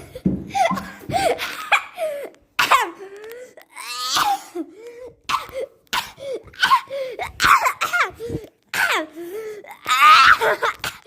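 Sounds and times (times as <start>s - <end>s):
person coughing: 0.5s - 3.2s, 4.0s - 4.7s.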